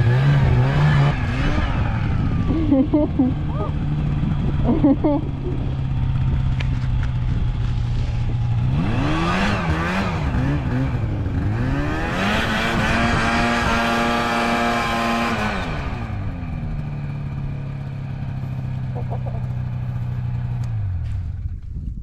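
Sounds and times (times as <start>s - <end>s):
snowmobile engine revving: 0.0s - 6.3s, 7.7s - 17.5s.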